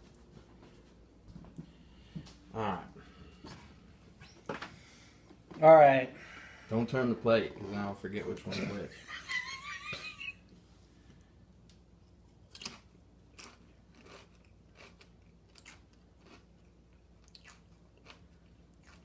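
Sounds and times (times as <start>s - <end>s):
person chewing crunchy chip: 12.4s - 19.0s.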